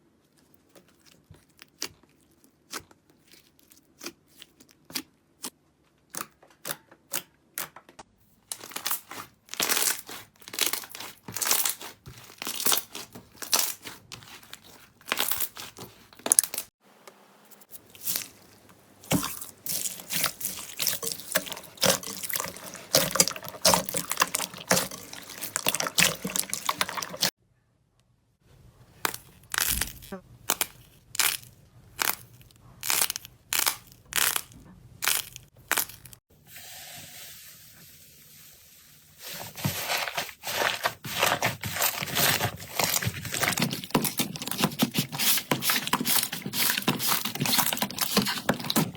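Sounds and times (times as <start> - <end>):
slime popping and crackling: 8.5 - 16.7, 29.0 - 36.2.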